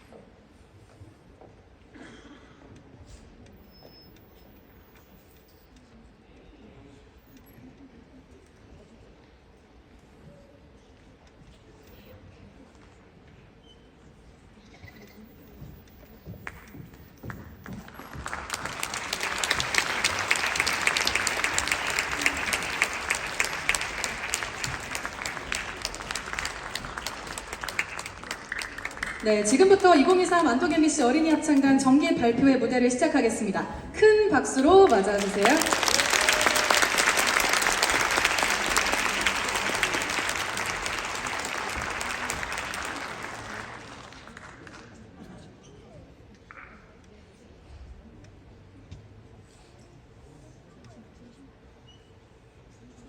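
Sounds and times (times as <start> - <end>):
audience applauding: 15.3 - 31.7, 34.8 - 45.1.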